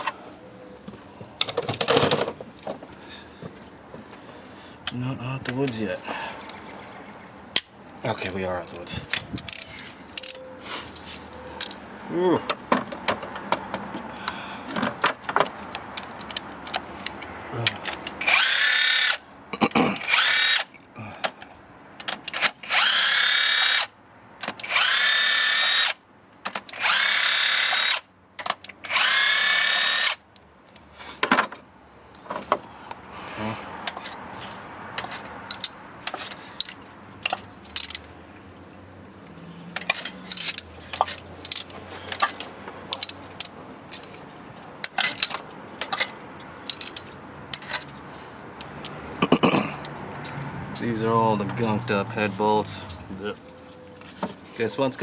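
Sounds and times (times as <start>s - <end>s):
metal clinks and taps: 9.1s - 10.5s, 35.0s - 38.1s, 39.8s - 44.2s, 44.8s - 48.0s
cordless power tool bursts: 18.2s - 19.2s, 20.0s - 20.7s, 22.3s - 23.9s, 24.6s - 26.0s, 26.7s - 28.0s, 28.8s - 30.2s.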